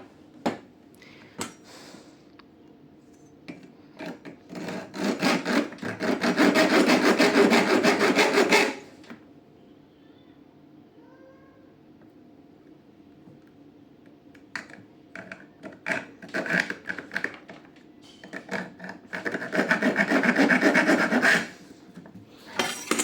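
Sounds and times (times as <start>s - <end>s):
rasping file strokes on metal: 4.6s - 8.8s, 19.1s - 21.7s.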